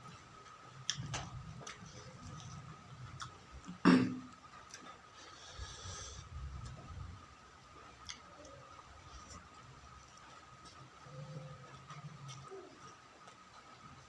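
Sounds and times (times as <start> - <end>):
person chewing: 0.8 - 6.3, 7.9 - 13.5
breathy hiss: 5.1 - 6.6.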